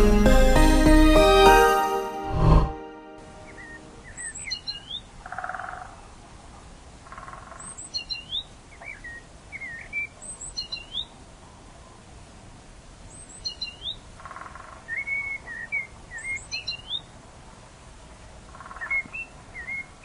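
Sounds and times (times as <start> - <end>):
music track: 0.0 - 4.0
birds singing: 3.5 - 5.1.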